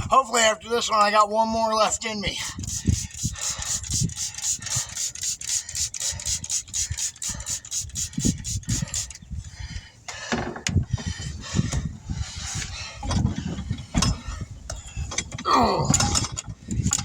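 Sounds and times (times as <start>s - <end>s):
rhythmic scraping on wheel rim: 2.4s - 9.2s.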